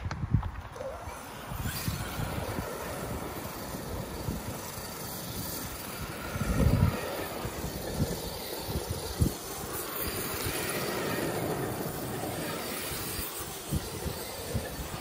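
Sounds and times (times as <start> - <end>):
rc truck driving over dirt: 0.0 - 15.0.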